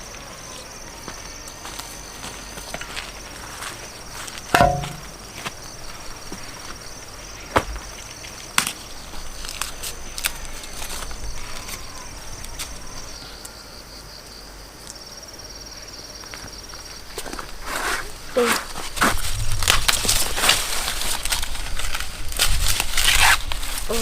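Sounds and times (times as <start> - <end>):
insects trilling: 0.0 - 22.3, 23.2 - 24.0
sharp chopping strikes: 4.6 - 5.2.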